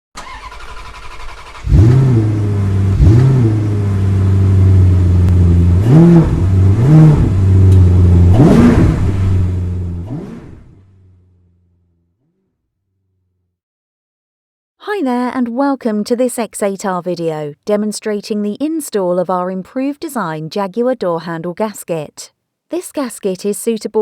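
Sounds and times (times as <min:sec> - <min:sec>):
car engine idling and revving: 0:00.2 - 0:12.4.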